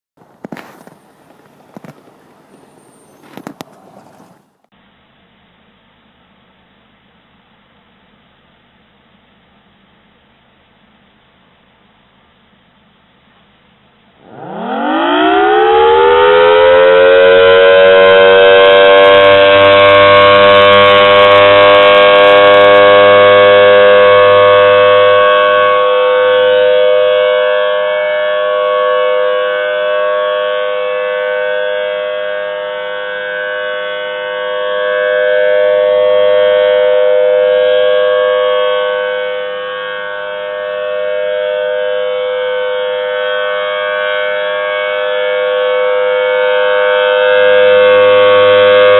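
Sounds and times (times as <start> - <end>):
outdoor warning siren winding up: 14.2 - 48.9.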